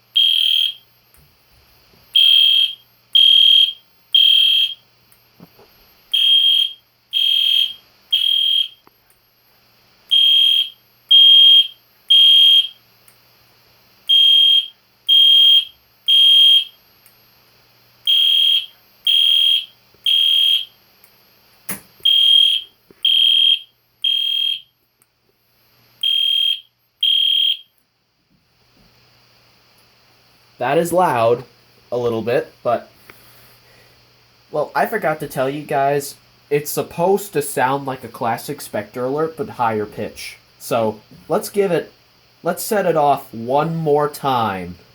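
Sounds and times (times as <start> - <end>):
fire alarm horn blasts: 0.1 - 0.9, 2.2 - 4.8, 6.1 - 8.8, 10.1 - 12.8, 14.1 - 16.8, 18.1 - 20.8, 22.0 - 24.7, 26.0 - 27.8
click: 8.8 - 9.2, 13.0 - 13.2, 17.0 - 17.2, 21.0 - 21.9.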